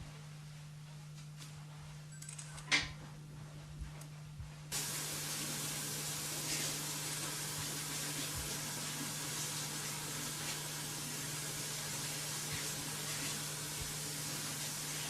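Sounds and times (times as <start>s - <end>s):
hair dryer blowing: 4.7s - 15.0s.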